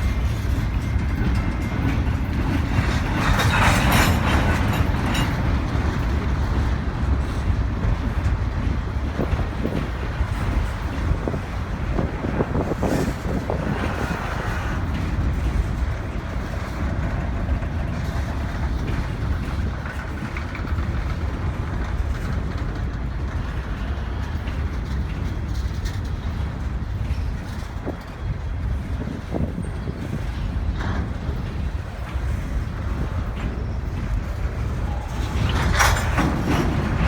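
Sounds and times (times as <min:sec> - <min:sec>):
freight train wheels rumbling: 0:00.0 - 0:37.0
train knocks and clanks: 0:00.0 - 0:37.0.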